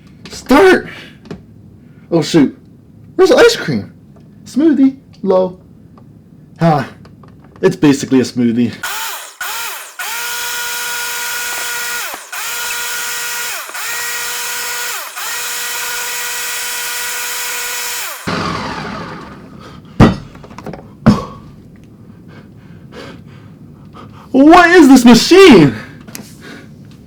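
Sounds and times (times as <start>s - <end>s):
electric blender motor whine: 8.8s - 19.8s
sharp knocks: 20.0s - 21.4s.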